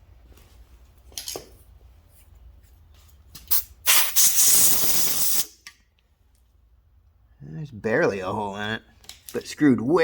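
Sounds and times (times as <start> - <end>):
short spray burst: 3.5 - 5.6
spray hissing: 3.9 - 5.5.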